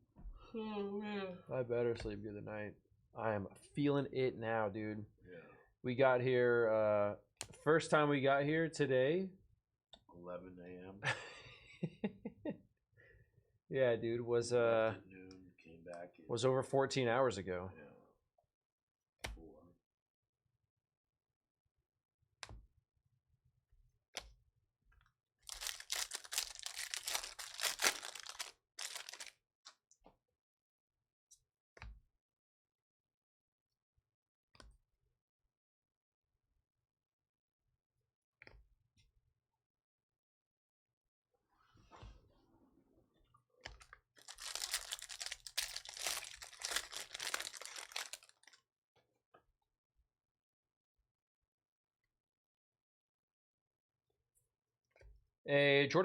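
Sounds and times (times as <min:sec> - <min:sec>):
foil wrapper tearing and crinkling: 0:25.5 - 0:29.3, 0:44.2 - 0:48.5.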